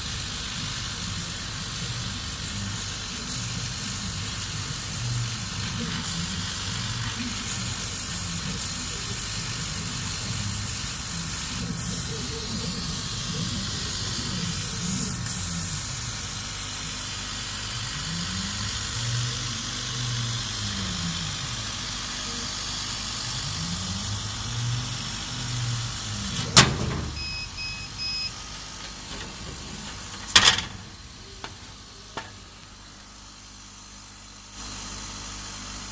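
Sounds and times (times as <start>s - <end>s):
steady hiss: 25.6s - 34.0s.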